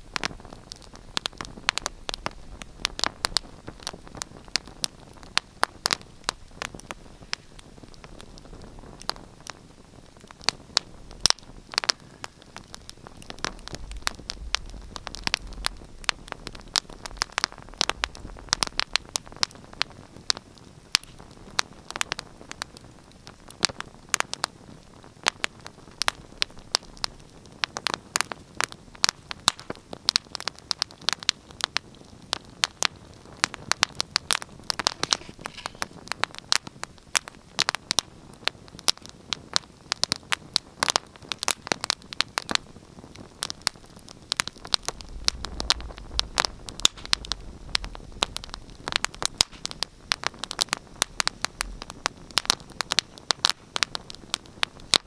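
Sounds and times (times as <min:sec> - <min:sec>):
wood fire crackling and popping: 0:00.0 - 0:55.0
low rumble: 0:13.4 - 0:18.8, 0:44.6 - 0:49.4.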